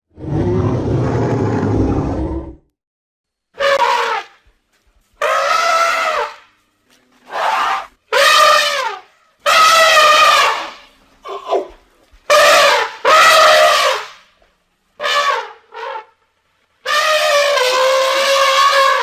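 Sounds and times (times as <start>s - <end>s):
elephant trumpeting: 3.6s - 4.4s, 5.2s - 6.5s, 7.2s - 14.2s, 15.0s - 16.2s, 16.8s - 19.0s.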